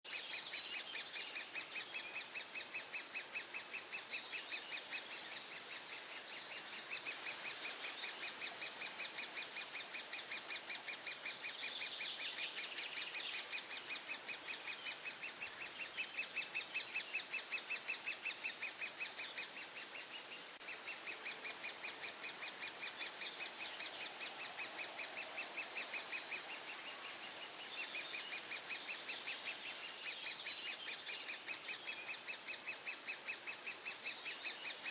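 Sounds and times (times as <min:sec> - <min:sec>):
woodpecker nestlings begging calls: 0:00.1 - 0:34.9.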